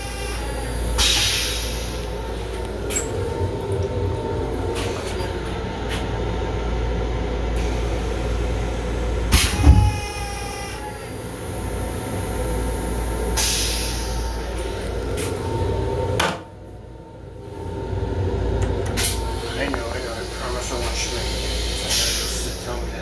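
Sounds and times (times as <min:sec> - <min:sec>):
train running low rumble: 0:00.0 - 0:23.0
loud knock: 0:09.4 - 0:10.4.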